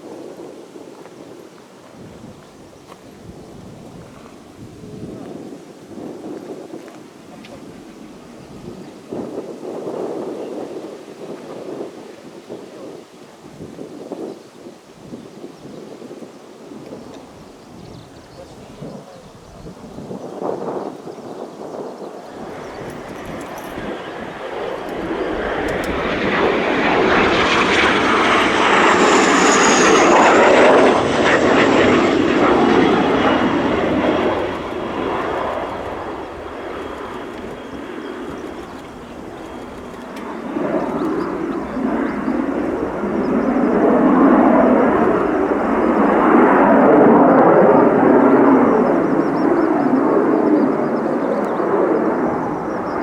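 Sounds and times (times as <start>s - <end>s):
jet aircraft roar: 16.6s - 53.0s
high turbine whine: 22.2s - 48.0s.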